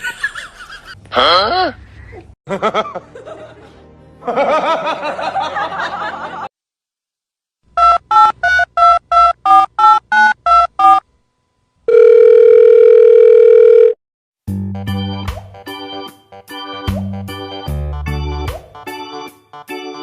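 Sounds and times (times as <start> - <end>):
steady dial tone: 11.9 - 14.0.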